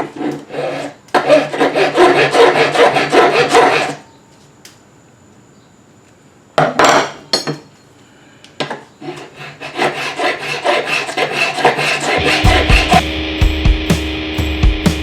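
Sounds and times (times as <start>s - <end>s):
file rasping on metal: 0.0s - 4.0s, 9.0s - 13.0s.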